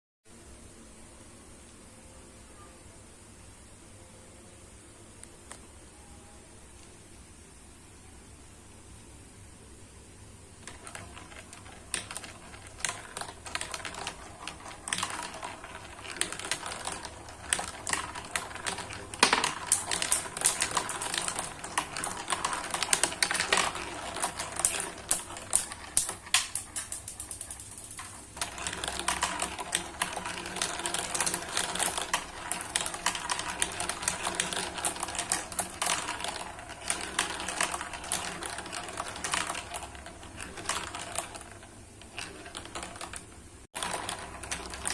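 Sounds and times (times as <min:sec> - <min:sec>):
marbles clicking down a track: 0:10.6 - 0:44.9.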